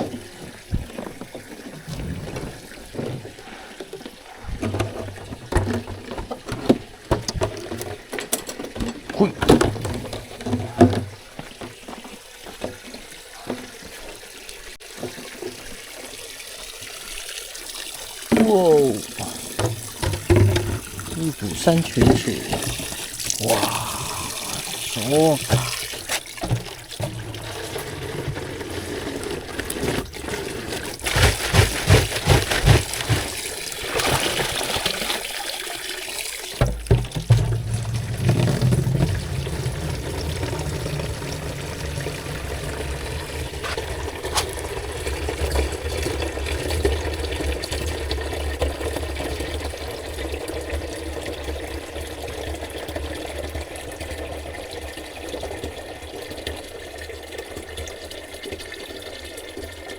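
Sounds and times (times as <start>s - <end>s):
spring water pouring into container: 0.0s - 59.9s
container knocks and bumps: 4.5s - 12.8s, 18.3s - 23.4s, 24.1s - 35.2s, 36.6s - 44.9s.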